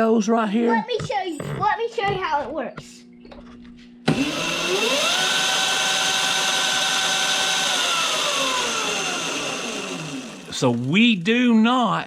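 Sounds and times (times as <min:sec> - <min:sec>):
electric motor whining: 0:04.0 - 0:11.9
spinning chain: 0:08.3 - 0:11.7.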